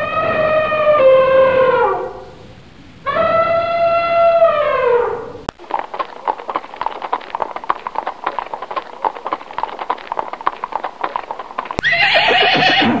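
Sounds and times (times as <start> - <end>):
horse hooves clip-clopping: 5.4 - 13.0
horse neighing: 8.0 - 13.0.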